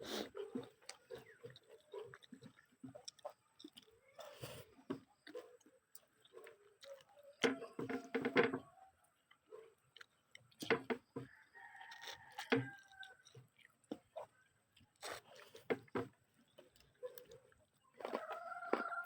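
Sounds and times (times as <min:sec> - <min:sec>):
rooster crowing: 0:18.1 - 0:19.0.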